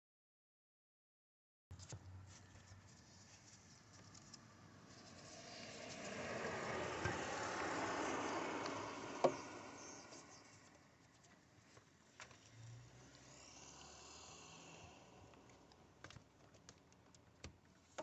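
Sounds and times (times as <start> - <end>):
rustling and scraping of parts: 1.8 - 5.4.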